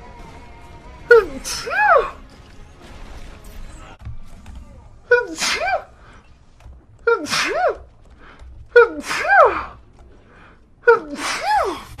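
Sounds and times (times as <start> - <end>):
high-pitched sneezes: 5.1 - 5.8.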